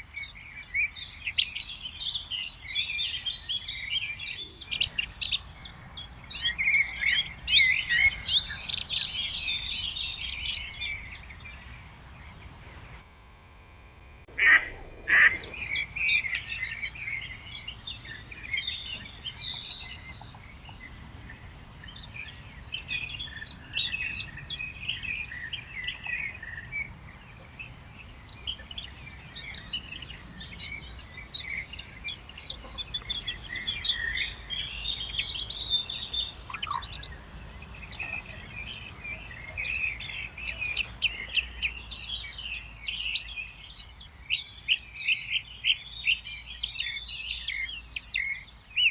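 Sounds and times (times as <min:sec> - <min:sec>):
songbirds chirping and trilling: 0:00.0 - 0:13.0, 0:14.3 - 0:48.9.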